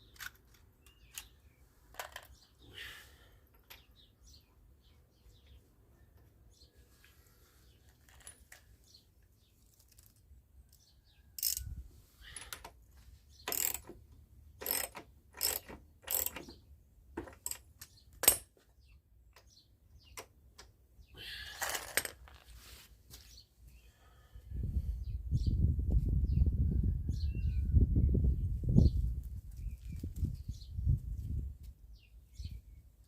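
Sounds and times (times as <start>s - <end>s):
metal tools clicking and clinking: 11.4s - 11.7s, 13.5s - 13.9s, 14.6s - 16.5s.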